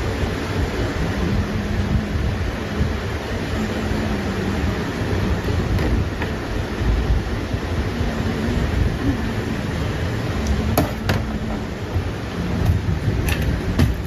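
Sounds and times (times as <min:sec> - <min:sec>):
faint hum: 0:00.0 - 0:14.0
low rumbling workshop noise: 0:00.0 - 0:14.0.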